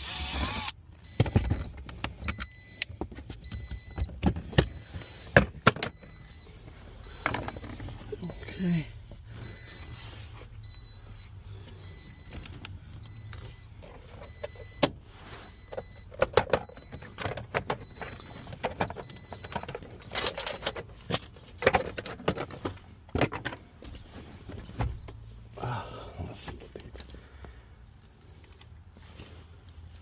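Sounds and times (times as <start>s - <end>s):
car warning chime beeping: 0.8s - 21.2s.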